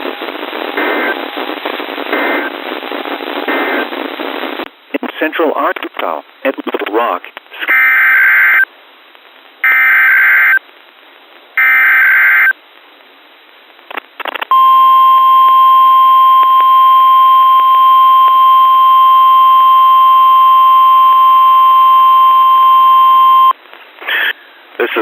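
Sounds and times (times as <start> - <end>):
brief crackle: 13.7 - 14.5.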